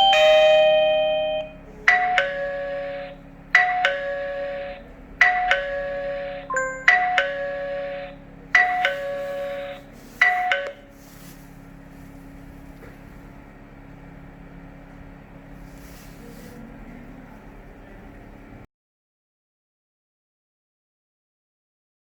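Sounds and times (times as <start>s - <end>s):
doorbell chime ding-dong: 0.0s - 3.0s, 6.5s - 10.8s.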